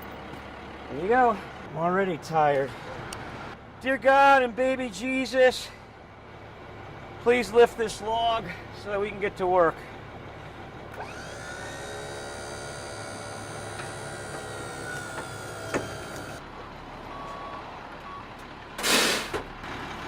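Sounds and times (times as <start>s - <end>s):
motor-driven lift whining: 10.8s - 16.4s
loud rush of air: 18.8s - 19.4s.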